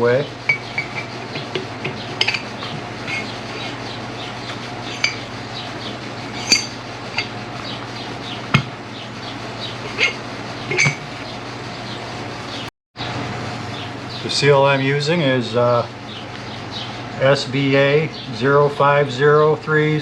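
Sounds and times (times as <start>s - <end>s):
steady low hum: 0.0s - 20.0s
metal parts clinking: 2.2s - 2.5s, 4.9s - 5.2s, 6.3s - 7.3s, 9.9s - 11.0s.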